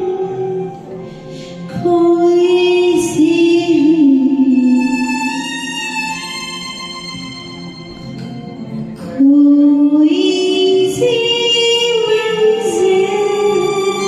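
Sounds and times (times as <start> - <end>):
recorded backing track: 0.0 - 14.0
woman singing long notes: 1.7 - 6.4, 9.0 - 14.0.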